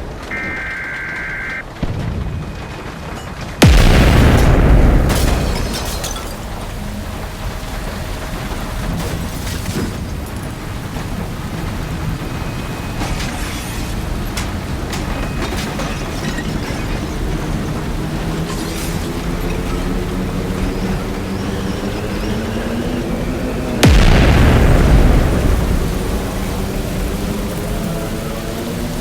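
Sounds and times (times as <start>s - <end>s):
explosion boom: 3.6s - 7.0s, 23.8s - 27.5s
deep rumble: 3.6s - 13.3s, 23.8s - 29.0s.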